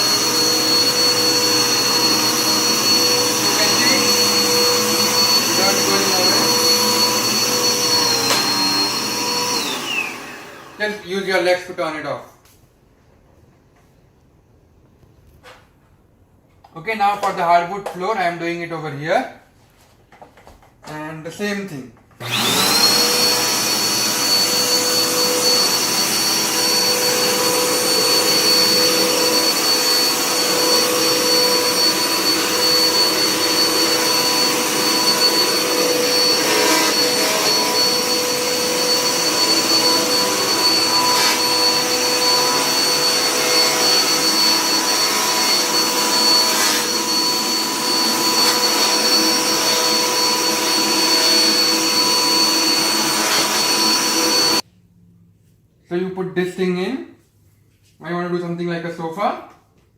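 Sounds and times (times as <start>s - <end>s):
upright vacuum running: 0.0s - 11.6s, 22.2s - 54.6s.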